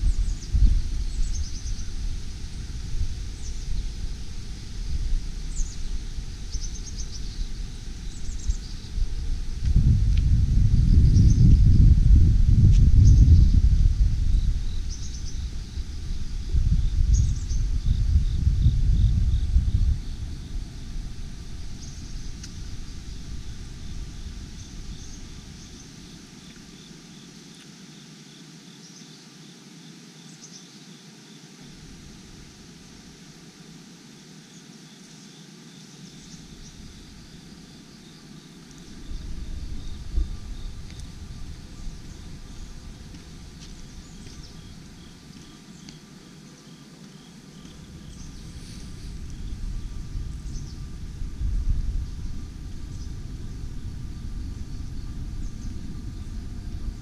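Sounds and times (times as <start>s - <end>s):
low microphone rumble: 0.0s - 26.2s, 38.8s - 45.6s, 47.5s - 57.0s
insects chirping: 0.0s - 57.0s.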